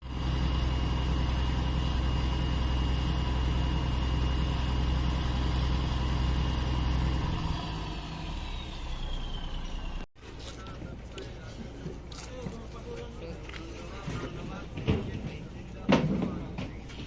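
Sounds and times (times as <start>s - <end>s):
high engine whine: 0.0s - 11.0s
boat engine humming: 0.0s - 15.9s.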